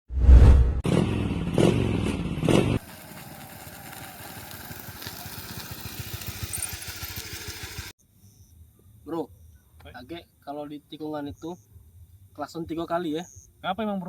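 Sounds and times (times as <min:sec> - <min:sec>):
motorcycle engine running: 0:00.9 - 0:07.9.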